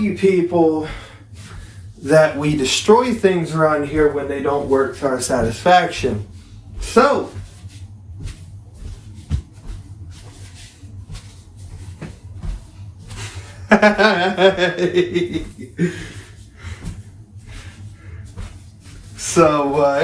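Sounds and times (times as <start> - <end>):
low hum: 0.0 - 20.0
faint rustling: 0.9 - 20.0
man chuckling: 13.2 - 16.4.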